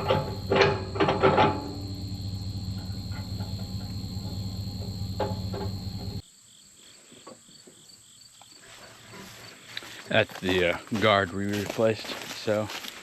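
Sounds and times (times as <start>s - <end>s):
machine hum with high whine: 0.0s - 6.2s
insects chirping: 0.0s - 11.2s.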